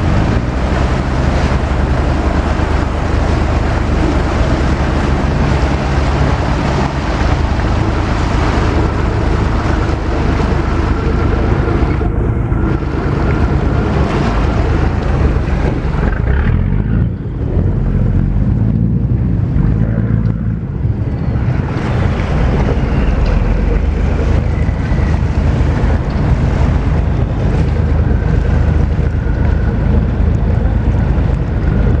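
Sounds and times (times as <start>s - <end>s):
boat engine drone: 0.0s - 32.0s
rushing water: 0.0s - 32.0s
wind buffeting microphone: 0.0s - 32.0s.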